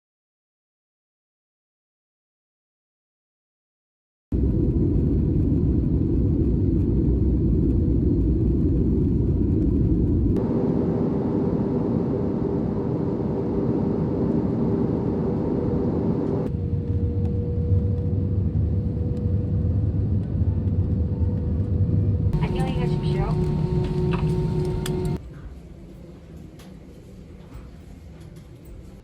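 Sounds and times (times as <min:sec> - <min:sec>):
airliner cabin engine rumble: 0:04.4 - 0:25.2
faint steady hum: 0:22.4 - 0:25.2.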